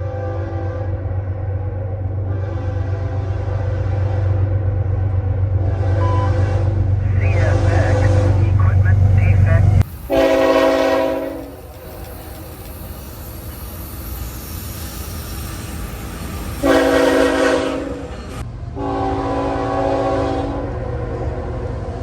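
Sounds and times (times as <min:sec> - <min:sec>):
train horn blasts: 0:00.0 - 0:09.1, 0:10.1 - 0:11.5, 0:16.6 - 0:18.2, 0:18.8 - 0:21.5
train rumbling past: 0:00.0 - 0:22.0.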